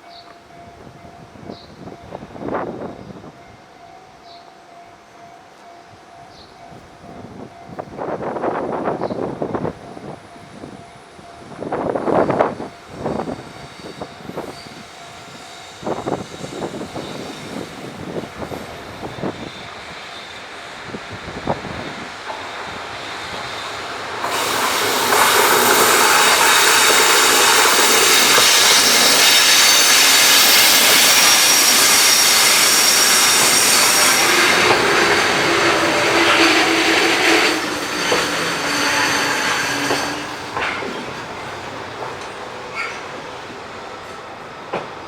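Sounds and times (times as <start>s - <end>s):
freight train passing: 6.7s - 45.0s
wheels squealing on rails: 11.4s - 45.0s
wheels clacking over rail joints: 21.4s - 45.0s.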